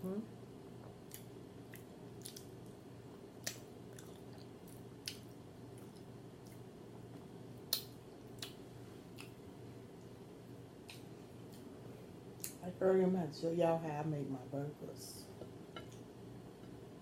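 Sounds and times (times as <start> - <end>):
low steady hum: 0.0 - 17.0
chewing with wet lip smacks: 1.0 - 2.8, 3.4 - 6.7.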